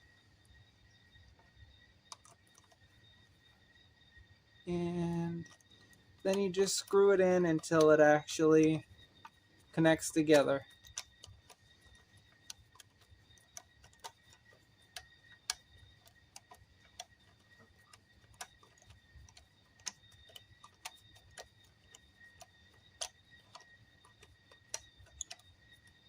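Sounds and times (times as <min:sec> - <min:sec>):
faint high-pitched tone: 0:04.6 - 0:05.6, 0:09.7 - 0:10.6
plastic parts clicking: 0:05.0 - 0:26.0.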